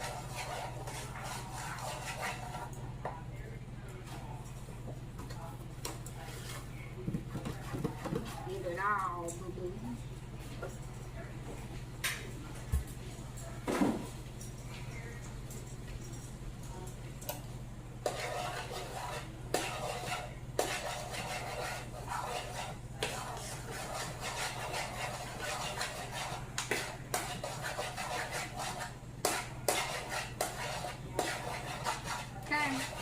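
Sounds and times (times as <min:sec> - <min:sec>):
spoon scraping a pot: 0:00.0 - 0:02.8, 0:18.0 - 0:33.0
steady low hum: 0:00.0 - 0:33.0.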